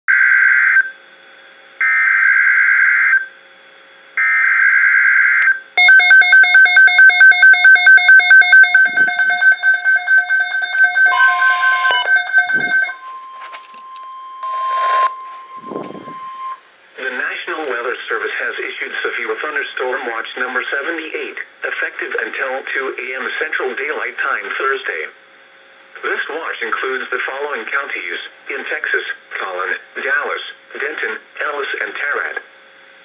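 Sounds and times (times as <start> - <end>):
screeching digital data bursts: 5.8 - 13.1
pulsing electronic alarm beeps: 5.8 - 16.6
steady attention tone: 5.8 - 17.1.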